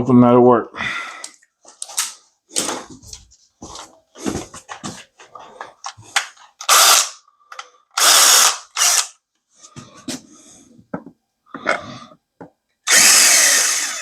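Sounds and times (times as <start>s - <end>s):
power drill running: 6.7s - 7.2s, 8.0s - 9.1s, 12.9s - 14.0s.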